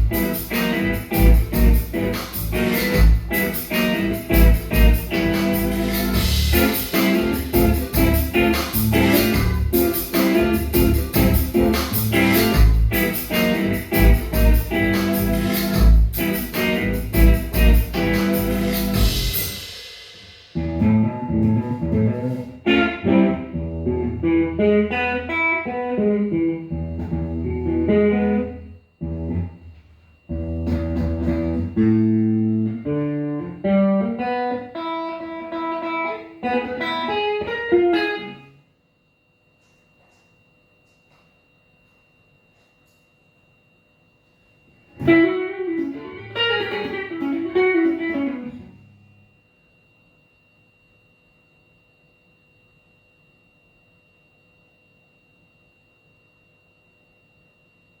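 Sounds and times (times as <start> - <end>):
bass guitar: 0.0 - 19.6, 20.6 - 29.6, 30.3 - 34.2
electric guitar: 0.0 - 19.7, 20.6 - 29.6, 30.3 - 38.6, 44.9 - 48.8
drum kit and cymbals: 0.0 - 22.9.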